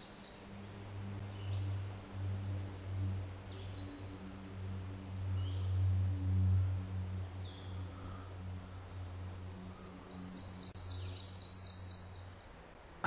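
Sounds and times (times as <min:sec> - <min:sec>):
low steady hum: 0:00.0 - 0:13.0
bird chirping: 0:10.1 - 0:12.5.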